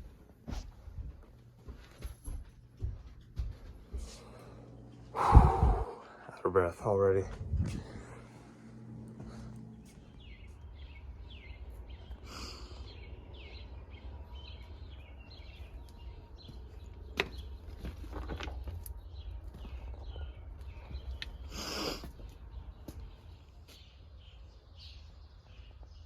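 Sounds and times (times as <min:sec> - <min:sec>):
steady low rumble: 0:03.5 - 0:26.0
bird chirping: 0:09.7 - 0:26.0.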